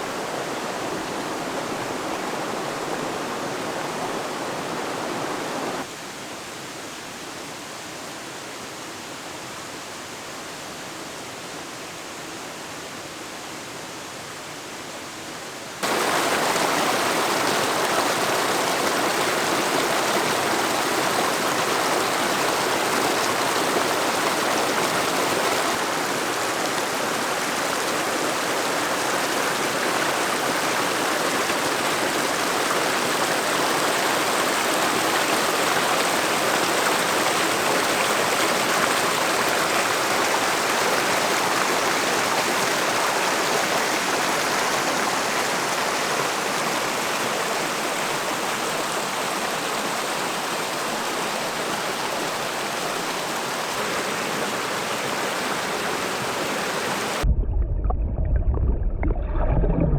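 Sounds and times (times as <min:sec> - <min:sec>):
water rushing: 0:00.0 - 0:06.0, 0:15.8 - 0:59.9
deeper sound: 0:57.2 - 0:59.9.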